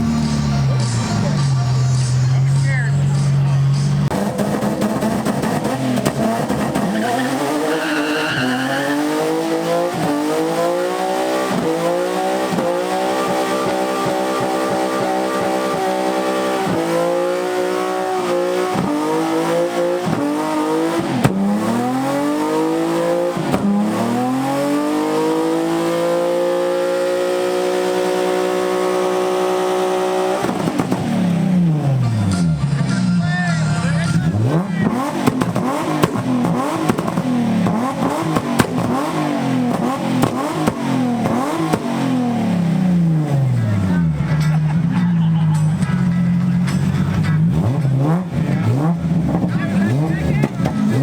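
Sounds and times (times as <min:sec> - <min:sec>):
car engine revving: 0:00.0 - 0:51.0
tyres squealing: 0:05.6 - 0:09.6.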